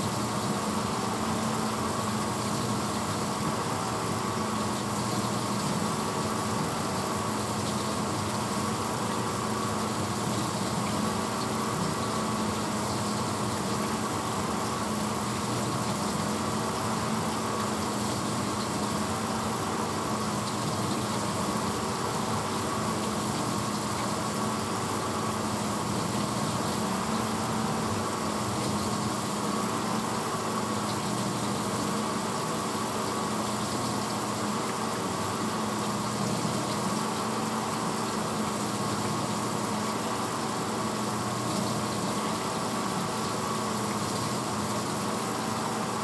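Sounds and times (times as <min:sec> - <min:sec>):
dishwasher running: 0:00.0 - 0:46.0.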